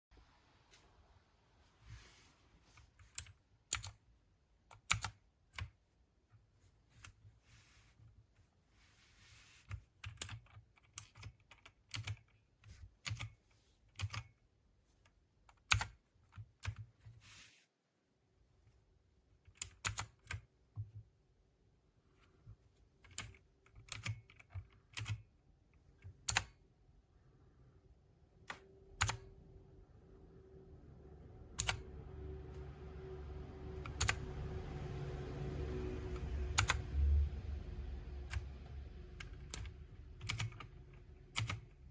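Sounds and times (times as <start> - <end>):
faint low hum: 0.1 - 41.9
mechanical keyboard keys clacking: 4.7 - 5.7, 9.7 - 14.4, 15.5 - 16.9, 23.0 - 25.3, 31.5 - 31.8, 33.8 - 34.2, 36.5 - 37.0, 38.2 - 41.9.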